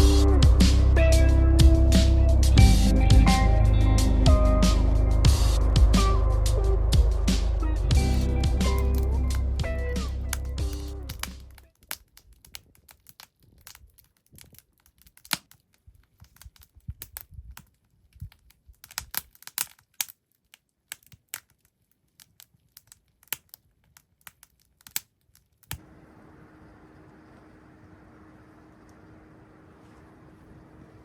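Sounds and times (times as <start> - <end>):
steady hiss: 0.0 - 11.5, 25.8 - 31.0
low constant hum: 0.0 - 11.6, 25.8 - 31.0
objects handled clicking and crinkling: 10.3 - 25.8.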